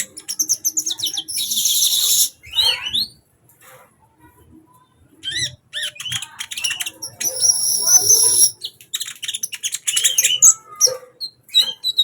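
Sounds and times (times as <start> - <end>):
sunbird chirping and trilling: 0.2 - 3.0, 6.0 - 8.6
bird whistled notes: 0.9 - 2.4, 7.0 - 8.6.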